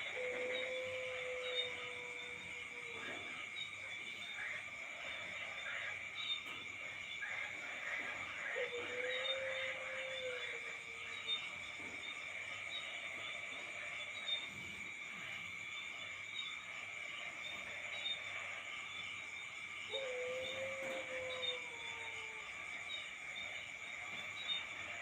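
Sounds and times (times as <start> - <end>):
night insects chorus: 0.0 - 25.0.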